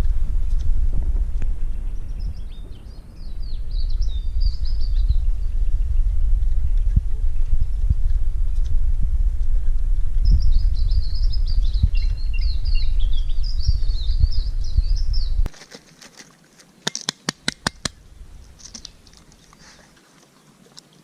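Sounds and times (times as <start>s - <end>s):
wind rumble on microphone: 0.0s - 15.5s, 17.5s - 19.9s
sharp clicks: 16.8s - 18.0s.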